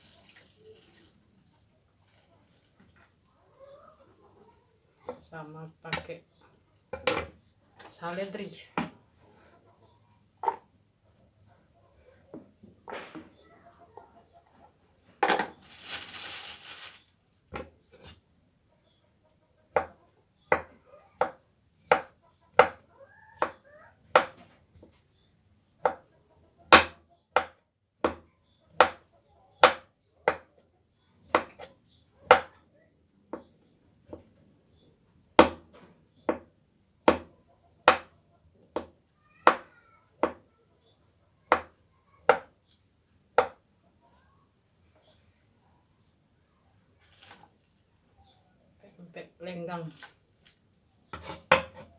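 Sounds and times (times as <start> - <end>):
rustling: 0.0 - 3.2, 15.4 - 17.3, 47.0 - 47.9, 49.8 - 50.7.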